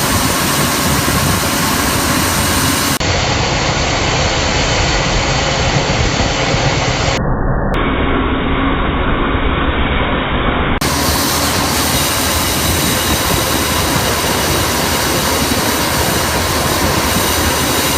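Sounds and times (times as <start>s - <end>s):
grain vacuum blower rushing: 10.8s - 17.9s.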